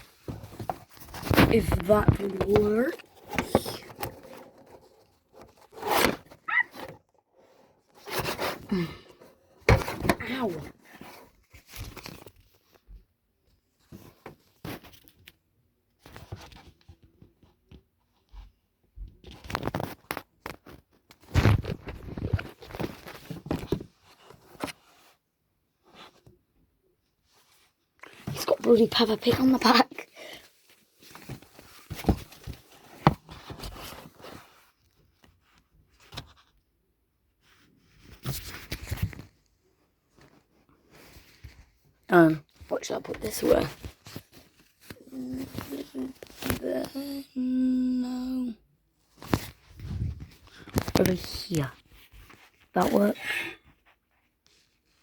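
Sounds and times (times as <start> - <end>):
rustling: 0.0 - 12.9
objects rustling and crinkling: 0.0 - 47.2, 48.9 - 55.0.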